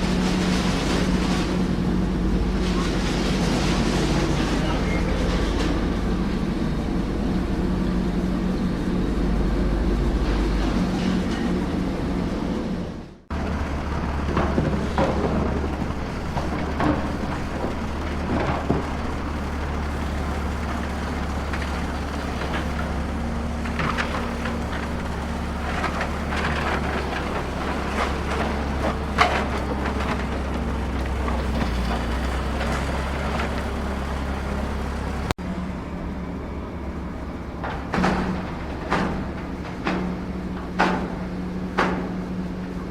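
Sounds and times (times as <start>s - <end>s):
engine drone: 0.0s - 42.9s
dirt and stones clattering: 13.3s - 35.0s.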